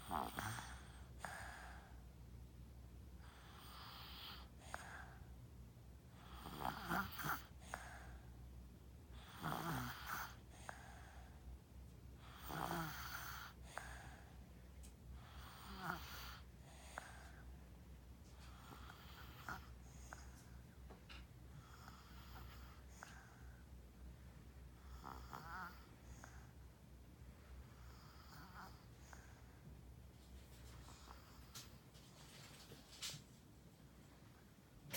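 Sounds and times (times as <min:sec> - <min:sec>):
child snoring: 0:00.0 - 0:01.9, 0:03.2 - 0:05.2, 0:06.2 - 0:08.2, 0:09.2 - 0:11.2, 0:12.2 - 0:14.2, 0:15.2 - 0:17.4, 0:18.5 - 0:20.3, 0:21.6 - 0:23.4, 0:24.8 - 0:26.4, 0:27.8 - 0:29.3.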